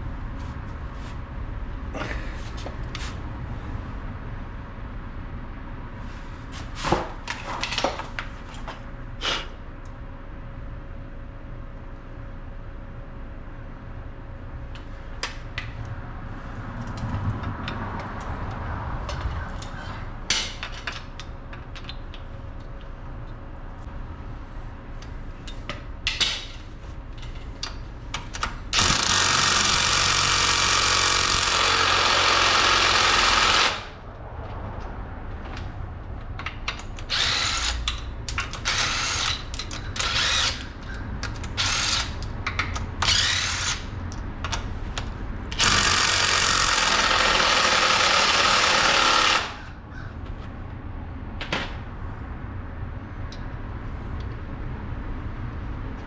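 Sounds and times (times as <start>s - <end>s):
power tool running: 28.7s - 34.0s, 43.0s - 43.8s, 45.6s - 49.7s.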